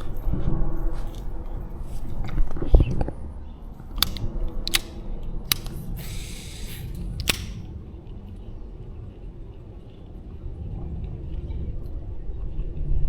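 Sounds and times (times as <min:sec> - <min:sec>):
sharp clicks: 0:03.9 - 0:07.7
brief hiss: 0:06.0 - 0:07.6.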